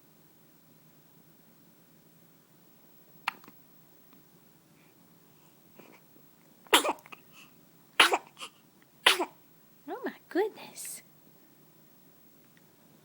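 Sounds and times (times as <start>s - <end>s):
person hiccuping: 6.7s - 7.1s, 8.0s - 8.4s, 9.1s - 9.3s
person sneezing: 6.7s - 7.2s, 8.0s - 9.4s.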